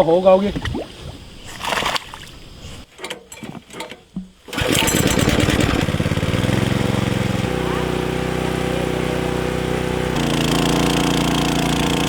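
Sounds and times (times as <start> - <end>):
small engine running: 3.8 - 12.0.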